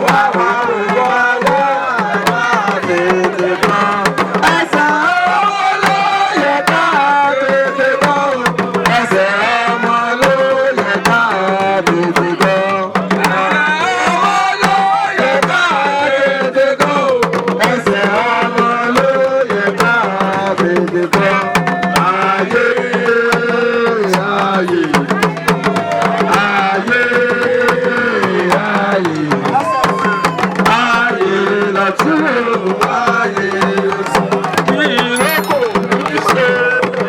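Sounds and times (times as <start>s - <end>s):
fast hand drum percussion: 0.0s - 37.0s
sliding pitch melody: 35.1s - 36.2s.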